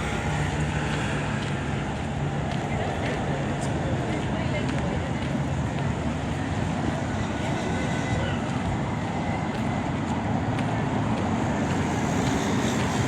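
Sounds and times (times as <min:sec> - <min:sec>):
city street traffic hum: 0:00.0 - 0:13.0.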